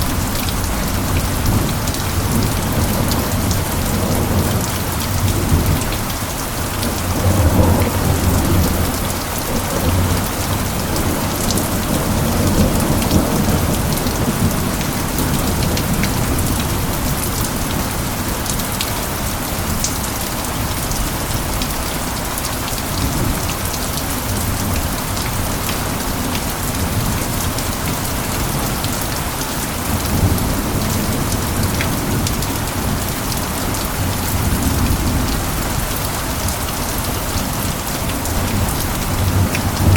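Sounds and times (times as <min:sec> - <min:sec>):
low thunder rumbling: 0:00.0 - 0:18.4, 0:37.5 - 0:39.9
heavy rain falling: 0:00.0 - 0:39.9.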